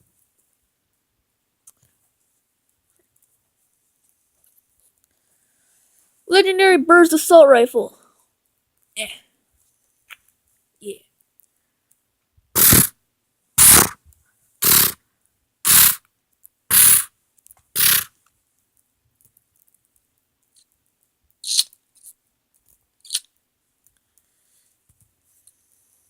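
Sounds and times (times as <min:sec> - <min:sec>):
faint clicks: 0:11.2 - 0:12.0, 0:17.4 - 0:24.3
short sharp noise bursts: 0:12.6 - 0:13.0, 0:13.6 - 0:14.0, 0:14.6 - 0:15.0, 0:15.7 - 0:16.0, 0:16.7 - 0:17.1, 0:17.8 - 0:18.1.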